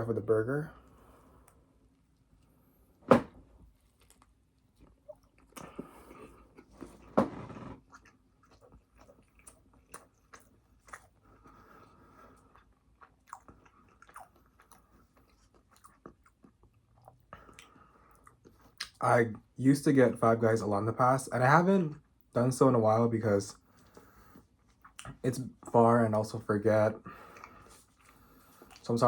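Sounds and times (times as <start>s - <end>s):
person chewing food: 3.8s - 19.0s, 23.6s - 25.2s, 27.1s - 28.8s.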